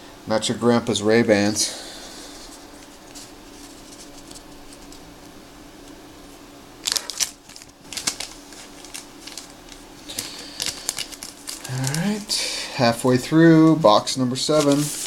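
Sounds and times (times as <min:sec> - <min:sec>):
faint steady hum: 0:00.0 - 0:15.0
wrapper crinkling: 0:02.4 - 0:05.1, 0:06.8 - 0:15.0.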